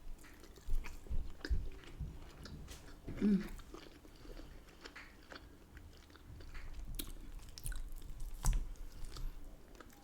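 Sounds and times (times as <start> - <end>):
person chewing food: 0.0 - 10.0
wet clicks and smacks: 4.9 - 5.5, 6.4 - 10.0.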